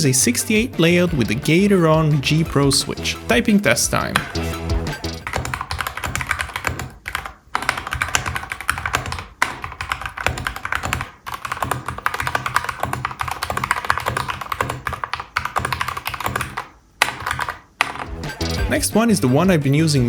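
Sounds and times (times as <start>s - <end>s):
fast typing on mechanical keyboard: 5.2s - 18.2s.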